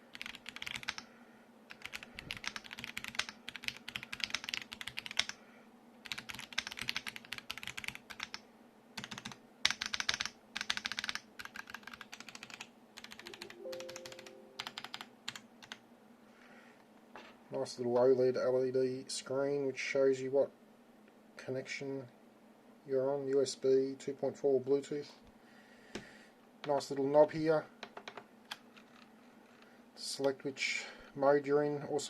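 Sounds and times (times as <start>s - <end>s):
mechanical keyboard typing: 0.0s - 1.0s, 1.7s - 5.4s, 6.0s - 8.4s, 9.0s - 15.8s.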